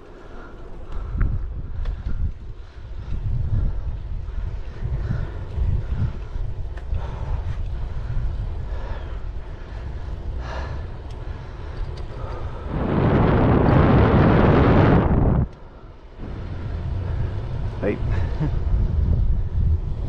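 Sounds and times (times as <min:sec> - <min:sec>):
wind buffeting microphone: 0:00.7 - 0:20.0
loud rushing gust: 0:12.6 - 0:15.5.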